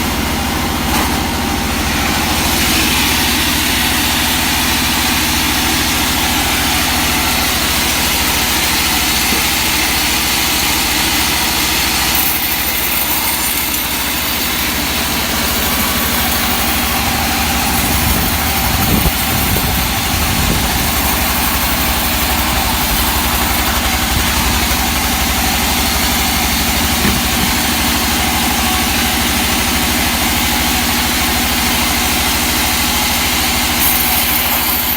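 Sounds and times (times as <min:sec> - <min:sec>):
machinery engine hum: 0:14.6 - 0:30.9.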